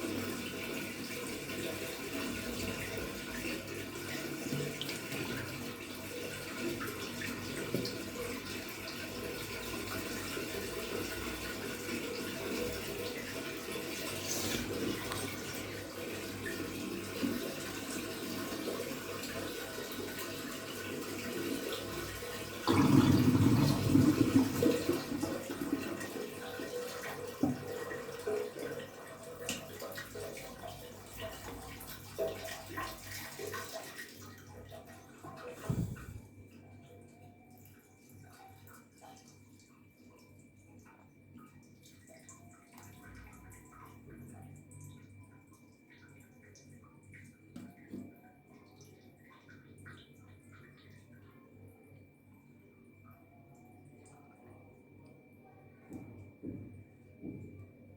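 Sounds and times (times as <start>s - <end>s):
washing machine running: 0.0s - 40.8s
water pouring and sloshing: 0.0s - 54.7s.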